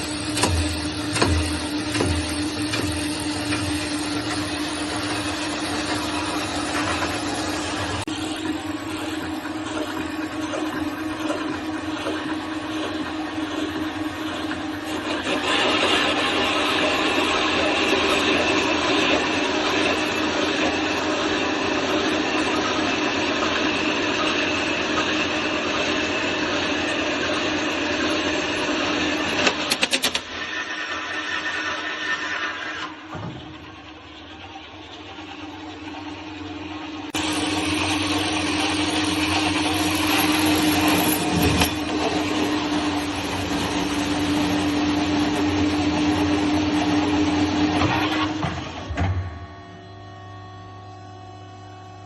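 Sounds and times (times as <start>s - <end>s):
machine humming with hiss: 0.0s - 52.0s.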